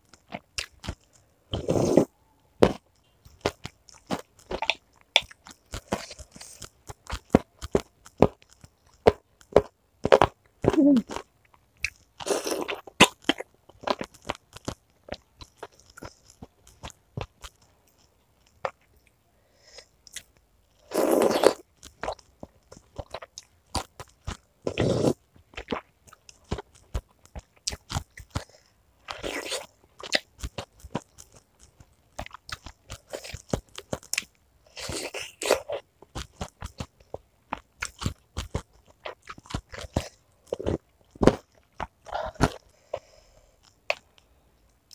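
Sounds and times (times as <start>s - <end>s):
chewing and crunching crisp food: 0.0s - 44.9s.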